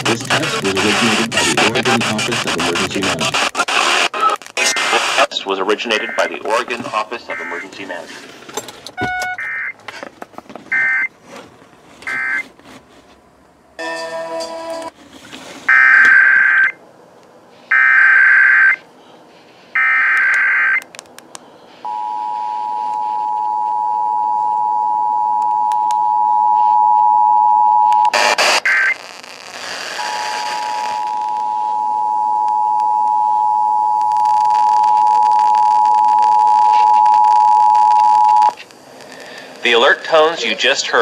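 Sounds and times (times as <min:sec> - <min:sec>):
two-tone attention signal: 0:09.0 - 0:09.6
burst of noise: 0:28.1 - 0:31.3.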